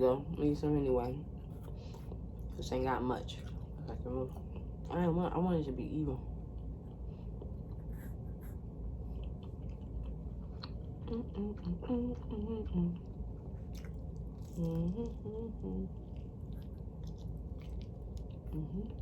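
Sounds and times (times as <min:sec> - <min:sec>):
person chewing: 0:09.1 - 0:19.0.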